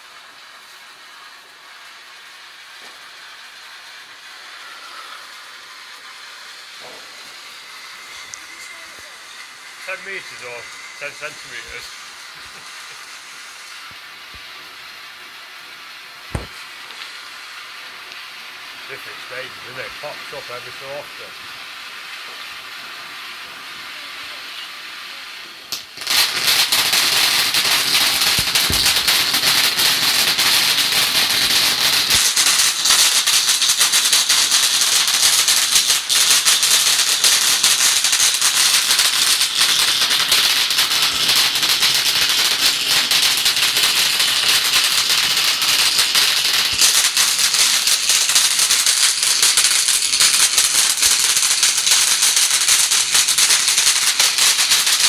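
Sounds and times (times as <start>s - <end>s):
firework crackling: 0.0s - 55.0s
firework fountain hissing: 0.0s - 55.0s.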